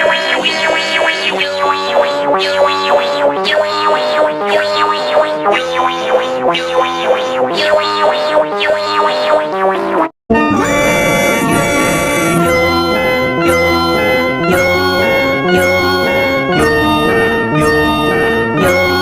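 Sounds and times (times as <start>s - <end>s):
electronic synthesizer melody: 10.6s - 12.5s.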